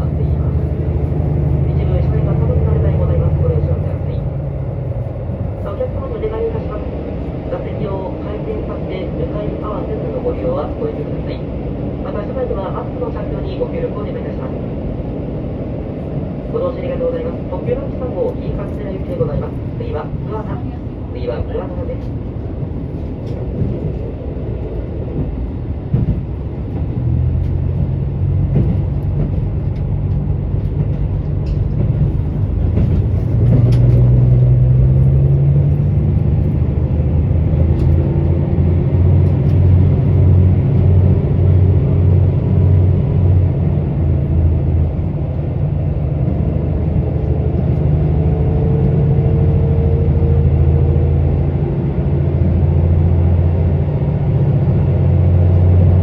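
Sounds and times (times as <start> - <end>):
diesel railcar engine drone: 0.0 - 56.0.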